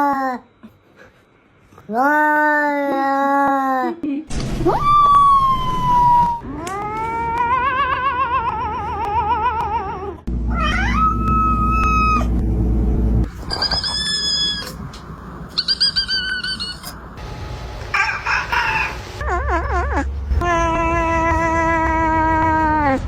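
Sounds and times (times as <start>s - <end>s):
low hum: 4.3s - 23.0s
cat yowling: 4.8s - 12.3s, 13.5s - 14.8s, 15.6s - 17.0s
cat squeaky cries: 10.5s - 12.3s, 13.4s - 14.8s, 15.5s - 17.0s.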